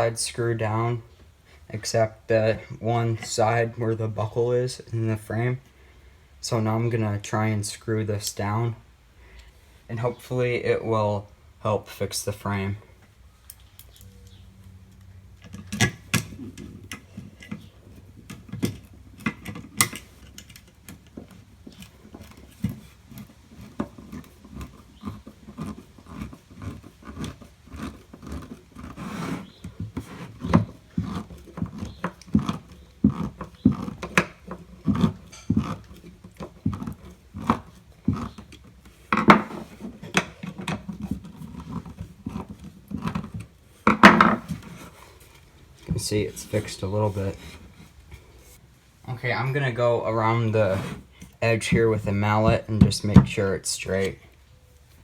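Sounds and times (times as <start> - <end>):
tools and parts handled: 13.0 - 48.6
screw turning into wood: 15.4 - 44.9.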